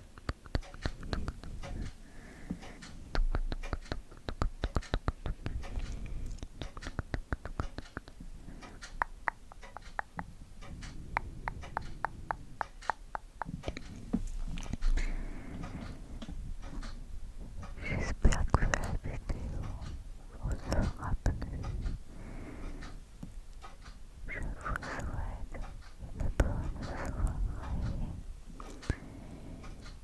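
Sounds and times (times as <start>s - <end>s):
rapid sharp clicks and taps: 0.0s - 17.0s.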